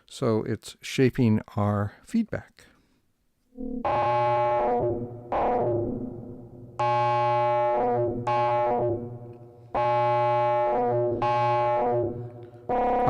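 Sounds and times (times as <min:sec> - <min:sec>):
synthesizer feedback tones: 0:03.6 - 0:09.1.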